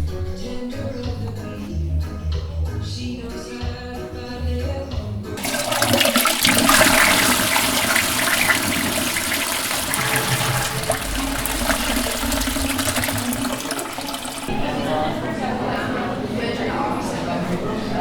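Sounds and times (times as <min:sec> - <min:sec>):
music: 0:00.0 - 0:14.5
toilet flushing: 0:05.4 - 0:15.1.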